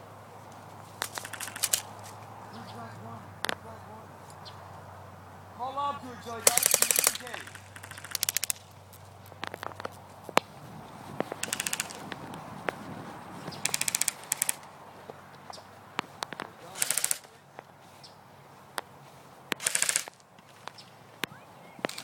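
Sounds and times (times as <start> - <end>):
airsoft guns full-auto bursts: 1.0 - 2.0, 6.4 - 8.8, 11.4 - 12.1, 13.6 - 14.7, 16.7 - 17.4, 19.6 - 20.7.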